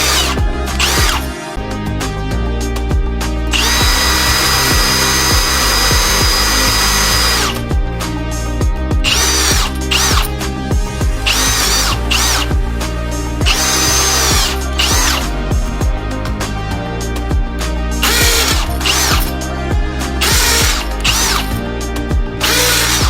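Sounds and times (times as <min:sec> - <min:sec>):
electric drill whining: 0:00.0 - 0:01.4, 0:03.5 - 0:07.6, 0:09.0 - 0:10.4, 0:11.2 - 0:12.5, 0:13.4 - 0:15.4, 0:18.0 - 0:19.4, 0:20.2 - 0:21.6, 0:22.4 - 0:23.0.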